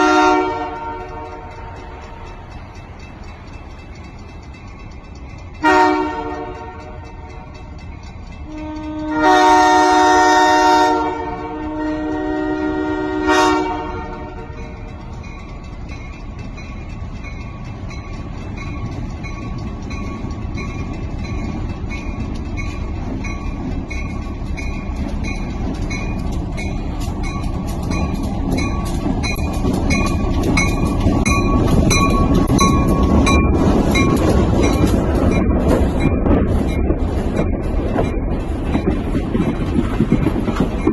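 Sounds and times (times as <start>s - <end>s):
locomotive air horn chord: 0.0s - 2.2s, 5.6s - 7.0s, 8.4s - 14.6s
train rumbling past: 0.0s - 40.9s.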